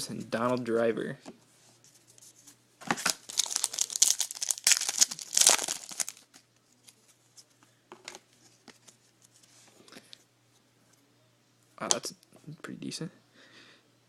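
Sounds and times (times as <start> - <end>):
cards rustling: 1.9 - 7.6
wrapper crinkling and tearing: 2.9 - 6.4.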